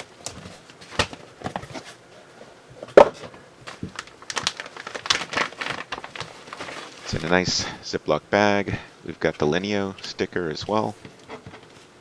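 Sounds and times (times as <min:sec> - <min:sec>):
plastic packaging crinkling: 0:03.6 - 0:07.5.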